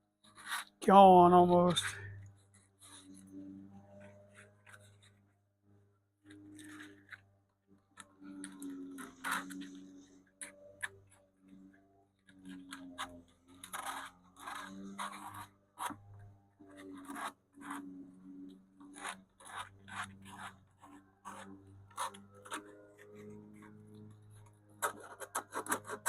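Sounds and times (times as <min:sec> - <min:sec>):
sandpaper scratching wood: 0:19.0 - 0:20.5, 0:21.2 - 0:22.2, 0:24.8 - 0:26.0.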